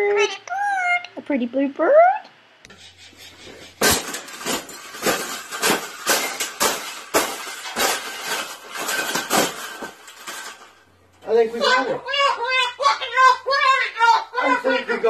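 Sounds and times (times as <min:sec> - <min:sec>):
hard objects clattering: 0:02.8 - 0:11.8.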